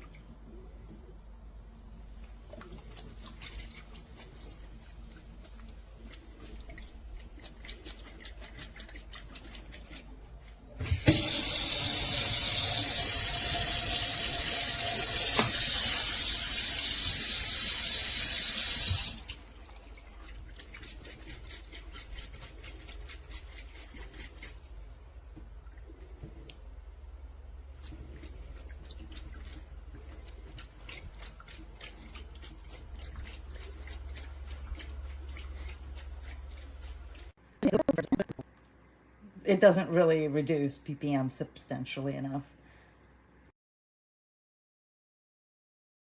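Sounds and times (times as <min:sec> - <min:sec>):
tap running into sink: 0:10.8 - 0:16.2.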